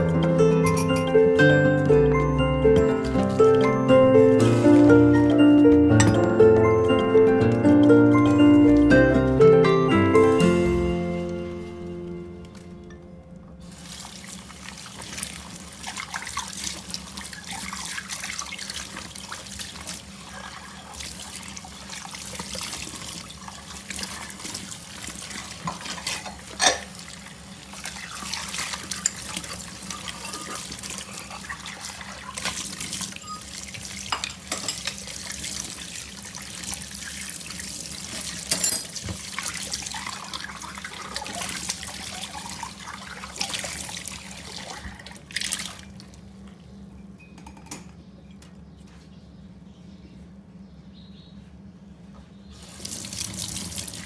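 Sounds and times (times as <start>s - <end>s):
tap water running into sink: 13.7s - 45.9s, 52.6s - 54.0s.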